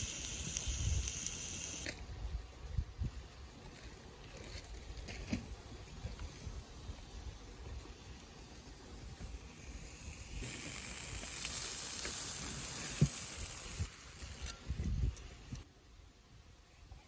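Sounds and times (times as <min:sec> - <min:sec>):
food sizzling in a pan: 0:00.0 - 0:01.9, 0:09.8 - 0:14.3.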